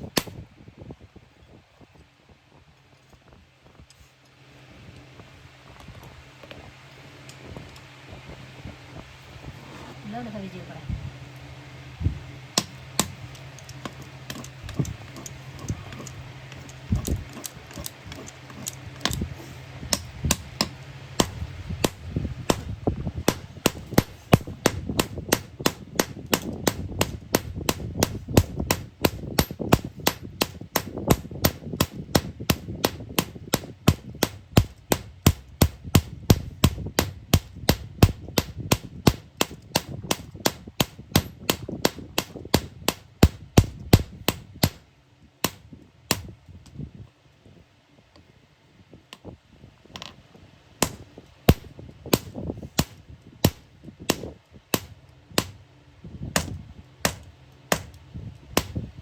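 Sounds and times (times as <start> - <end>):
low steady hum: 0.0 - 59.0
hammer blows on iron: 12.6 - 44.8.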